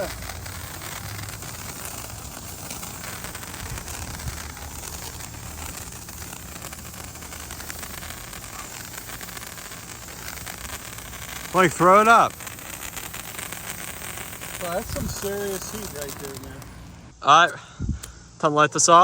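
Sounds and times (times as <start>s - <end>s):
firework hissing and crackling: 0.0s - 18.2s
wind rumbling on microphone: 3.0s - 6.0s, 14.6s - 17.1s.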